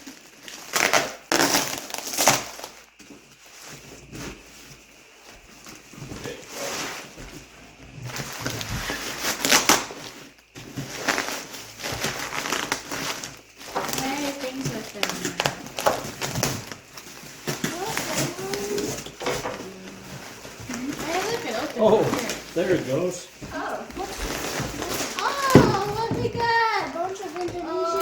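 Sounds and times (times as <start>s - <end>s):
cardboard box being torn open: 0.2s - 2.8s, 8.2s - 22.6s, 23.5s - 28.0s.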